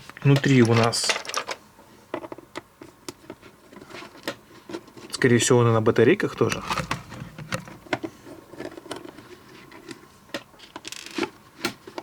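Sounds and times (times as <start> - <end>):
plastic lamp clicks and knocks: 6.4 - 8.0.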